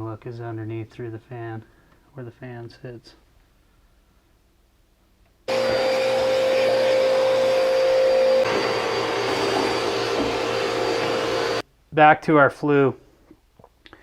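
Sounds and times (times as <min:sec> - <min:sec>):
electric motor whirring: 0:05.5 - 0:11.6.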